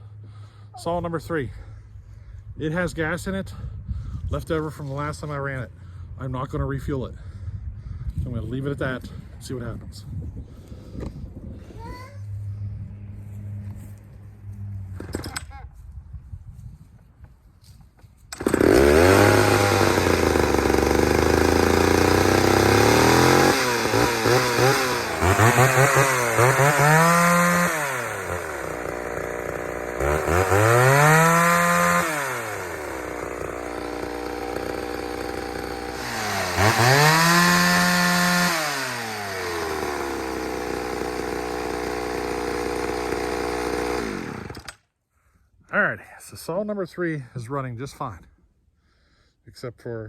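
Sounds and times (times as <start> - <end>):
chainsaw revving and idling: 18.3 - 44.9.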